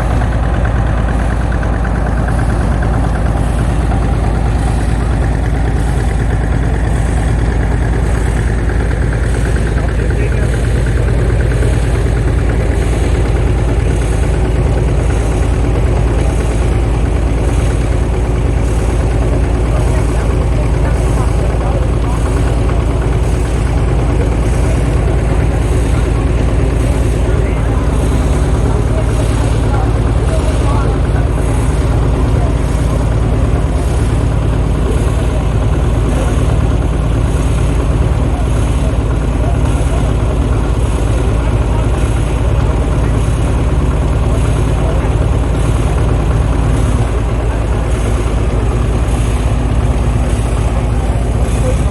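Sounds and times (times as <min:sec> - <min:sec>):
tractor engine idling: 0:00.0 - 0:51.9.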